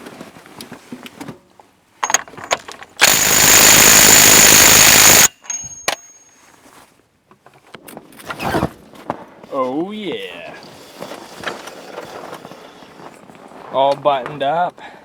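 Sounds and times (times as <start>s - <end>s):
sharp clicks: 2.0s - 6.0s
impact wrench rattling: 2.0s - 6.1s.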